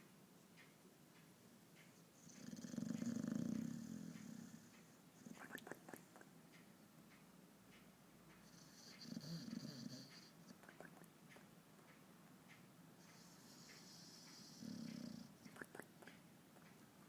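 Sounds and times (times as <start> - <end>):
dog snoring: 2.2 - 6.1, 8.4 - 11.1, 13.0 - 16.1.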